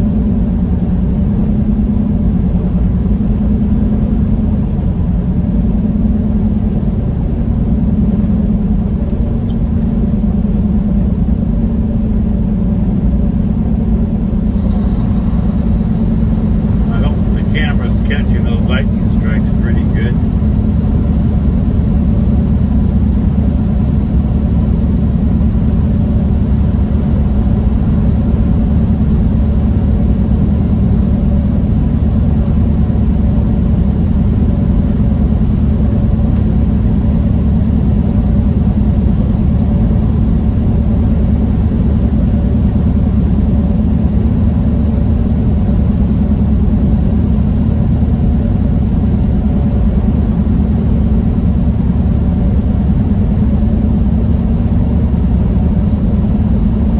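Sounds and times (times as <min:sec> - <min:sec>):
truck diesel engine drone: 0:00.0 - 0:56.9
low steady hum: 0:00.9 - 0:56.9
road noise: 0:13.8 - 0:38.0.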